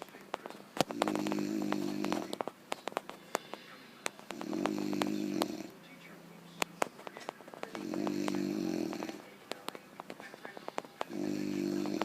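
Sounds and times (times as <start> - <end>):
buzzing snore: 0.9 - 2.4, 4.3 - 5.7, 7.7 - 9.2, 11.1 - 12.0.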